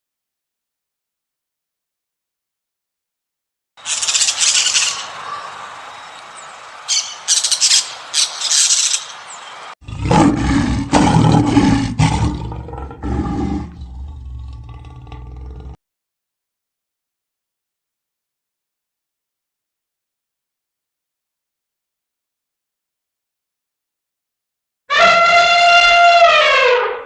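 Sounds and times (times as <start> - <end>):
sharp high-pitched animal bursts: 3.8 - 9.4
deep rough roaring call: 9.4 - 15.8.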